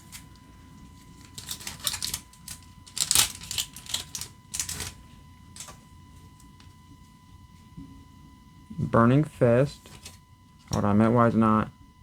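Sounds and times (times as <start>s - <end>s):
foil wrapper crinkling and tearing: 1.1s - 5.0s.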